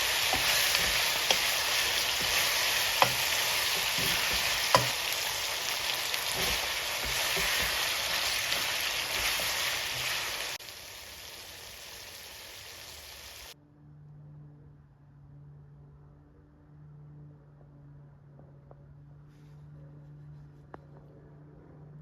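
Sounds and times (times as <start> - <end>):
stirring knocks: 0.0 - 10.6
food sizzling in oil: 0.0 - 13.6.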